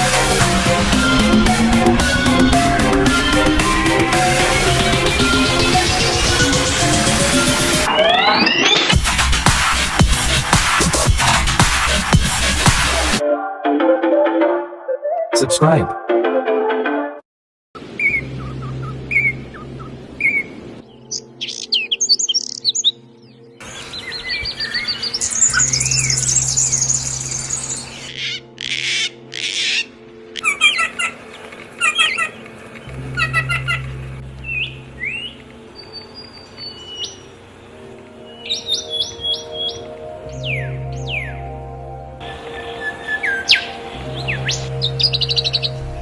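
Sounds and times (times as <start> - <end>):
background music: 0.0 - 17.2, 18.0 - 46.0
songbirds singing: 17.8 - 41.6, 42.2 - 46.0.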